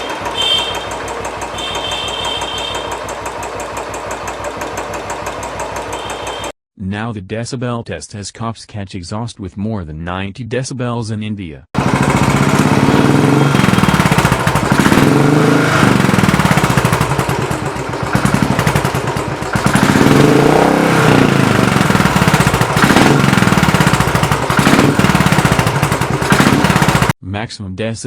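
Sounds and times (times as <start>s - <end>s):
motorcycle engine revving: 0.0s - 6.5s, 11.8s - 27.2s.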